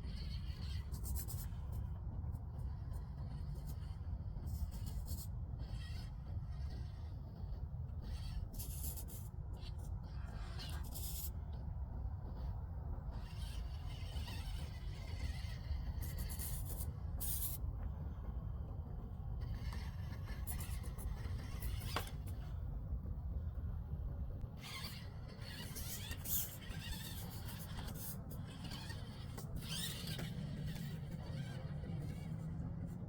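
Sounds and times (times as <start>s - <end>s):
steady low rumble: 14.6s - 25.4s.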